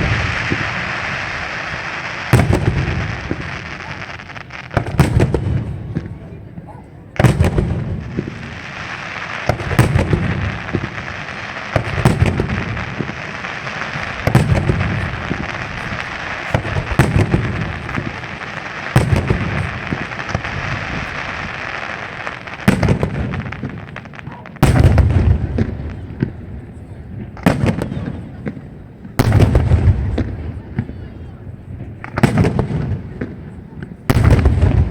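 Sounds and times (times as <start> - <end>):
fireworks bangs: 0.0 - 34.9
fireworks crackling: 0.0 - 34.9.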